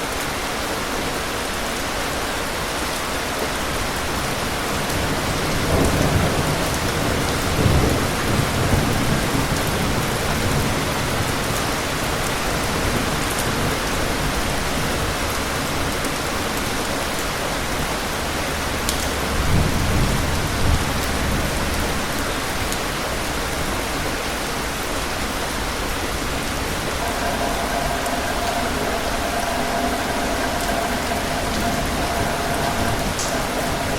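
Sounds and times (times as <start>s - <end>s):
heavy rain: 0.0s - 33.9s
distant thunder rumbling: 27.0s - 33.9s.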